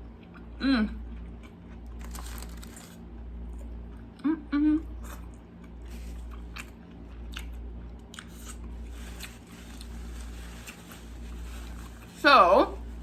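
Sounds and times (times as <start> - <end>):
low steady hum: 0.0 - 13.0
person chewing with wet smacks: 4.9 - 10.0.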